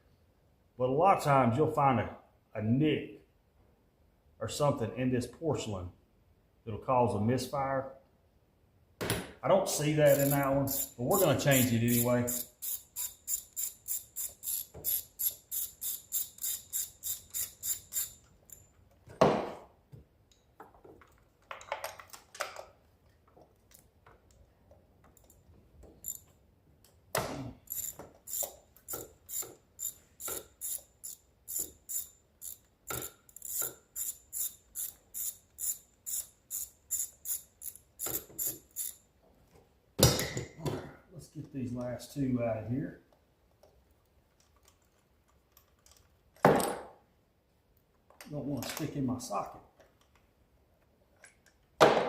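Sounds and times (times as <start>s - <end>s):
ratchet wrench clicking: 10.0s - 18.6s, 26.0s - 26.3s, 27.7s - 39.0s.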